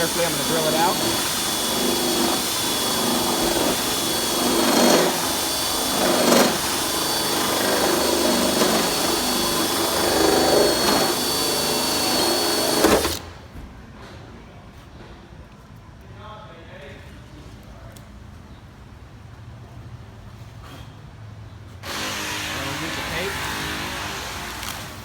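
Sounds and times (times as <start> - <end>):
electric drill whining: 0.0 - 13.4, 21.8 - 25.0.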